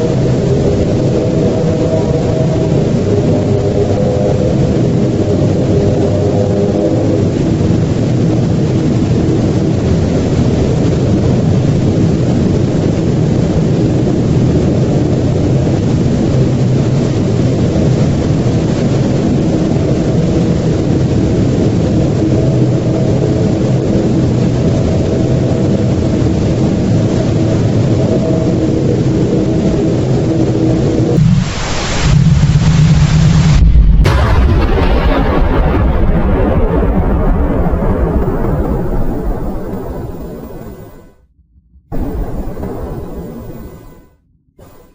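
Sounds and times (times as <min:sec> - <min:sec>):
loud low rumble: 0:00.0 - 0:44.9
faint held tones: 0:39.5 - 0:44.9.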